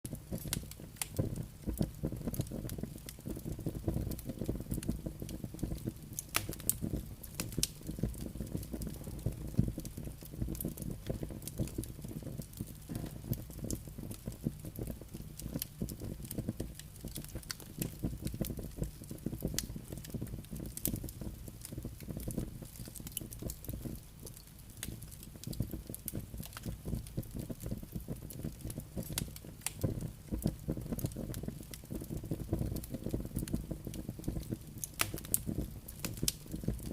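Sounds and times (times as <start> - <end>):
campfire crackling: 0.1 - 36.9
sharp pops of fire: 0.1 - 36.9
steady low rumble: 8.0 - 11.9.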